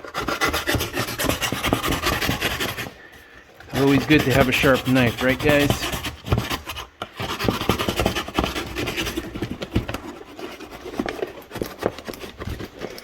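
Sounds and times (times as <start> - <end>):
knife scraping packing tape: 0.0 - 3.1, 3.7 - 13.0.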